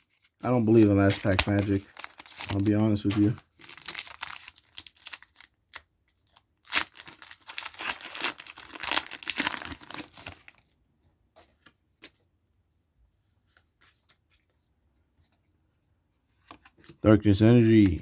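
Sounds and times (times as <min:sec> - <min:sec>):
cards rustling and clicking: 0:00.5 - 0:05.4
foil wrapper tearing and crinkling: 0:00.5 - 0:10.6.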